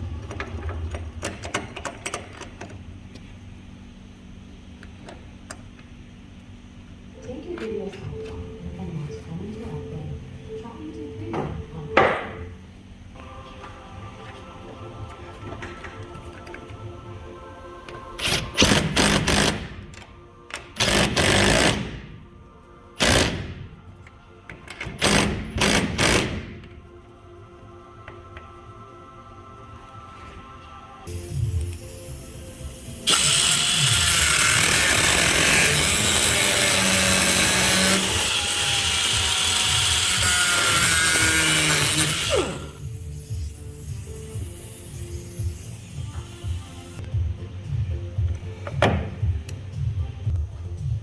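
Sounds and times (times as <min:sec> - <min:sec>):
background music: 0:13.2 - 0:51.0
power tool whirring in bursts: 0:18.2 - 0:19.8, 0:20.8 - 0:22.0, 0:23.0 - 0:23.6, 0:25.0 - 0:26.4, 0:31.1 - 0:44.5
motor winding down whine: 0:31.1 - 0:44.2.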